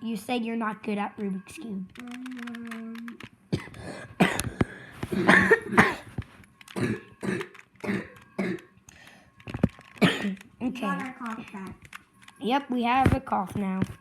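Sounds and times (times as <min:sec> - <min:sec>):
child coughing: 0:03.5 - 0:06.1, 0:06.8 - 0:08.7, 0:10.0 - 0:10.4
child clearing throat: 0:03.6 - 0:06.1, 0:06.8 - 0:08.7, 0:10.0 - 0:10.4.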